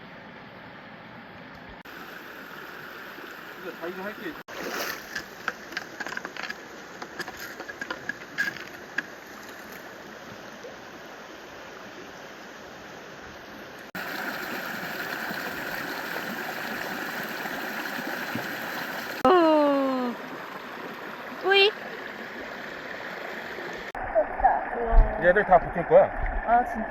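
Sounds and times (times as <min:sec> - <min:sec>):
stream water running: 0:01.0 - 0:26.9
small clicks and splashes: 0:04.7 - 0:09.9.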